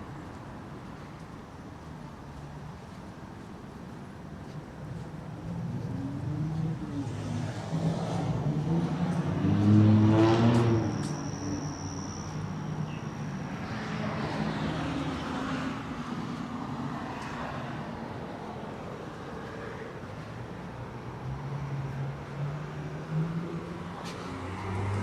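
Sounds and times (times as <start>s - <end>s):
vehicles passing: 0.0s - 25.0s
car accelerating past: 5.7s - 12.2s, 22.4s - 25.0s.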